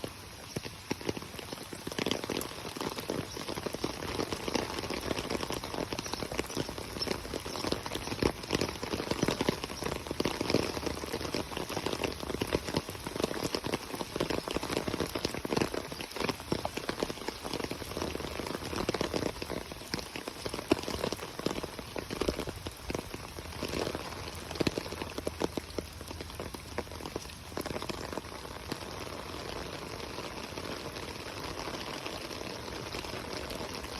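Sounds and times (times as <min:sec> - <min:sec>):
steady rain: 0:00.0 - 0:33.9.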